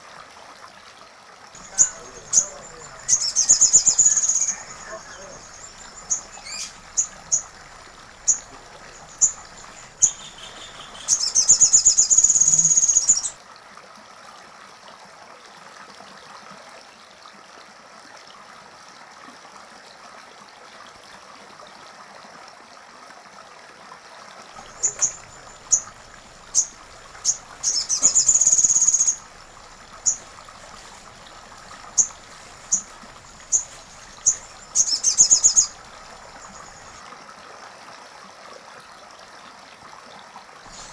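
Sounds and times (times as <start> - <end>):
bird calling high notes: 1.6 - 13.4, 24.6 - 37.0
bird rattling trill: 1.6 - 13.4, 24.6 - 37.0, 40.7 - 40.9.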